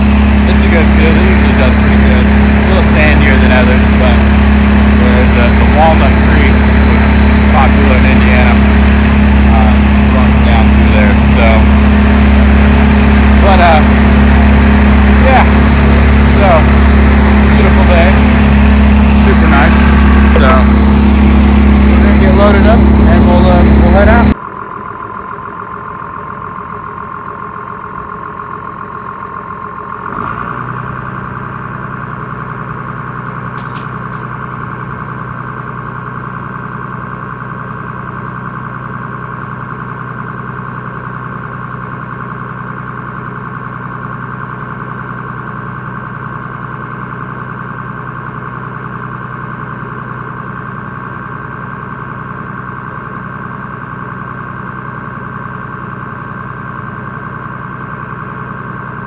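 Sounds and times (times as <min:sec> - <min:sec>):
steady low hum: 0:00.0 - 0:24.4
high even whine: 0:00.0 - 0:25.0
tractor engine running: 0:00.0 - 0:59.0.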